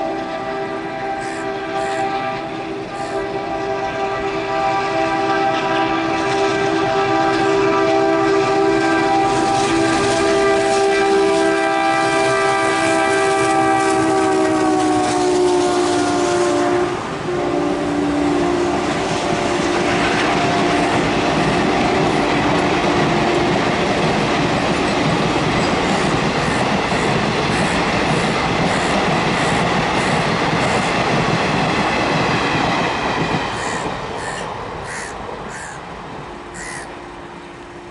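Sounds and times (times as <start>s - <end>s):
locomotive horn: 0.0s - 23.9s
train wheel clatter: 19.0s - 34.4s.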